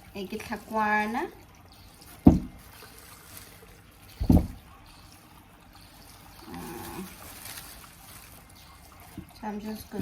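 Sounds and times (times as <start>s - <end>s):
water trickling and splashing: 0.0s - 10.0s.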